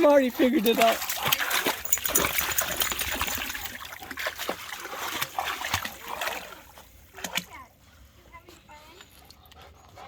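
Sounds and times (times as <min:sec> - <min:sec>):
dog splashing through water: 0:00.0 - 0:07.6
creek trickling: 0:00.0 - 0:10.0.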